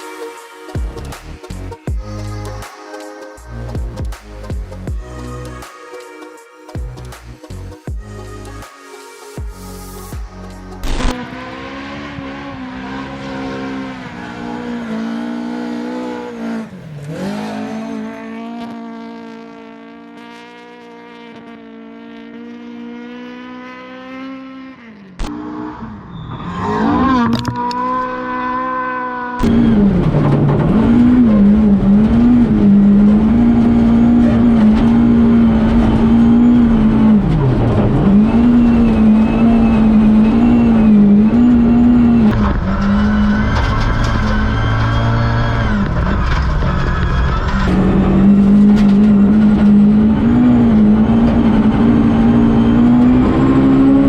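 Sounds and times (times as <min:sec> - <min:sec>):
rally car engine at high revs: 0:10.8 - 0:54.0.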